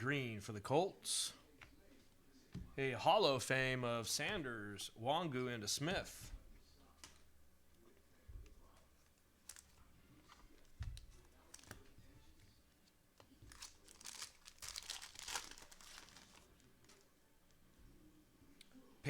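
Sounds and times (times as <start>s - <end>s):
wrapper tearing and crinkling: 13.5s - 17.0s.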